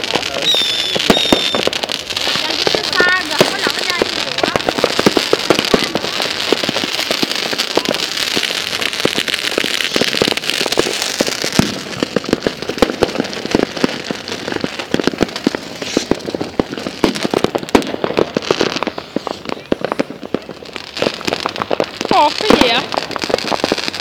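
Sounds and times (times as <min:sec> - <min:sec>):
fireworks crackling: 0:00.0 - 0:24.0.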